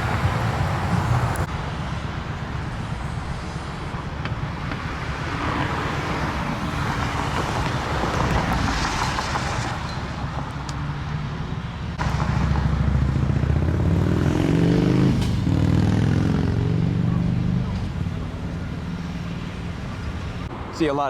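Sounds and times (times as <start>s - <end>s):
passing cars: 0.0s - 21.0s
vehicle engine speeding up: 12.0s - 19.9s.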